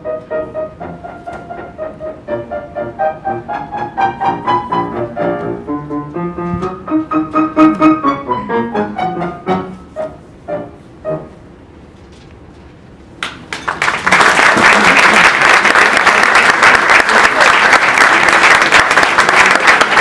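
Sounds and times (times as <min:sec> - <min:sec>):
piano notes: 0:00.0 - 0:12.0
audience applause: 0:13.2 - 0:20.0.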